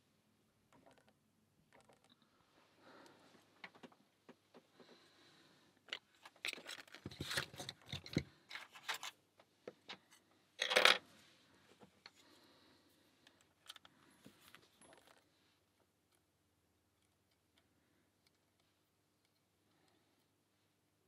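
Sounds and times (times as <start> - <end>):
lock picks clicking and scraping: 13.3 - 15.2.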